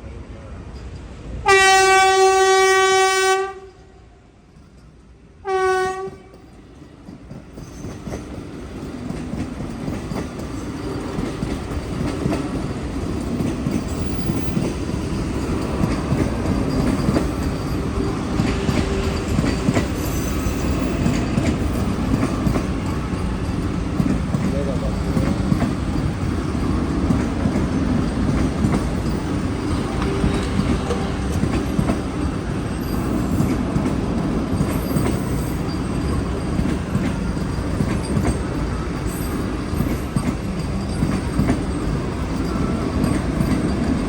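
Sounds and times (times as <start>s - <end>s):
train horn blasts: 1.4s - 3.9s, 5.4s - 6.4s, 29.8s - 31.7s
train wheels rumbling on rails: 4.4s - 44.0s.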